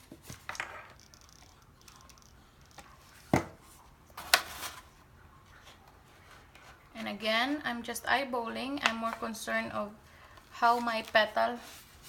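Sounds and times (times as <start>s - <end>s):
faint paper rustling: 10.2s - 12.0s.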